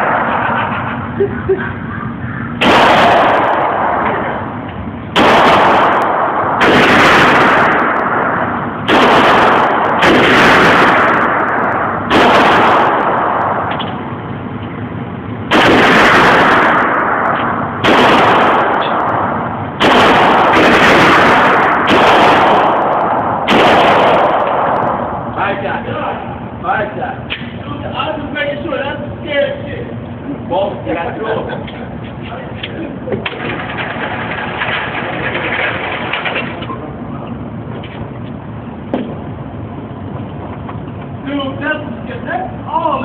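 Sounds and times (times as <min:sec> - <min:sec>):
rifle shots with rumbling echo: 0:00.0 - 0:01.2, 0:02.0 - 0:14.6, 0:15.4 - 0:30.0, 0:33.2 - 0:36.8.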